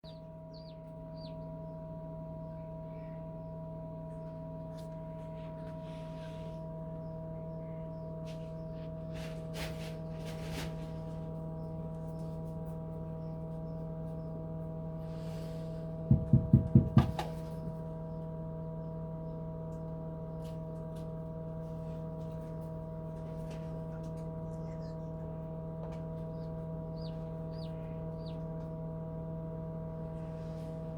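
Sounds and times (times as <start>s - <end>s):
refrigerator hum: 0.0s - 30.9s
knocks: 16.1s - 17.3s.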